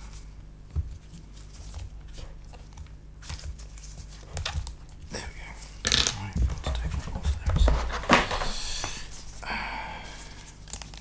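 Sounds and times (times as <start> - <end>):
steady low hum: 4.5 - 11.0.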